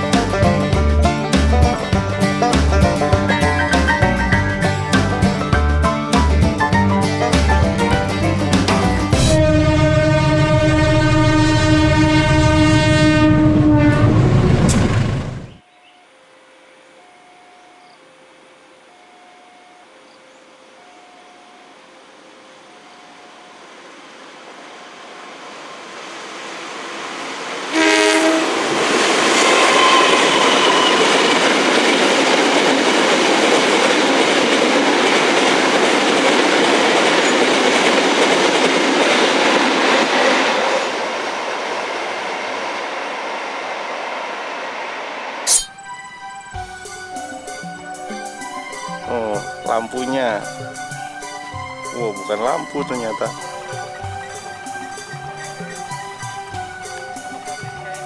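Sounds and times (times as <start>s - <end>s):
locomotive horn blast: 9.2s - 14.9s, 27.6s - 32.0s
train wheels clattering on rails: 25.8s - 44.5s
level crossing warning bell: 45.5s - 58.0s.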